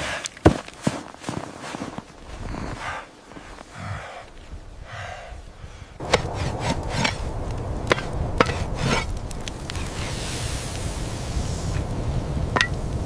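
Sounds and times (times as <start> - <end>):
soft scraping: 7.9 - 11.9.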